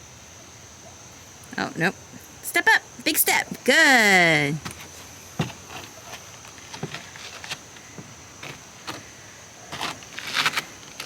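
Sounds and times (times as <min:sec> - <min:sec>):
toddler footsteps on playground: 0:04.5 - 0:09.1, 0:09.7 - 0:11.0.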